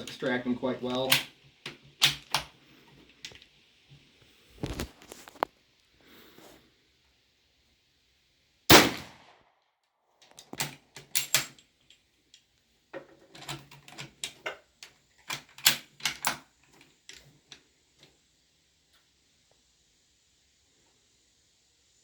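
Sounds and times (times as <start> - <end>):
rifle shot: 8.7 - 9.5.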